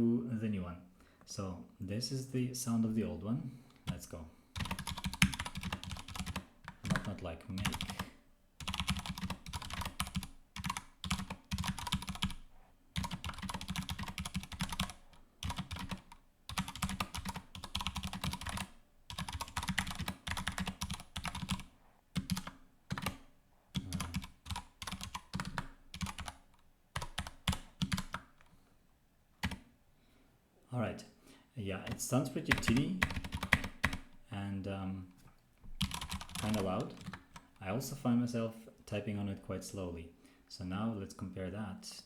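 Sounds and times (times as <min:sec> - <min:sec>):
mechanical keyboard typing: 0:04.6 - 0:23.2, 0:23.8 - 0:26.4, 0:27.0 - 0:28.5, 0:31.9 - 0:34.0, 0:35.8 - 0:37.4.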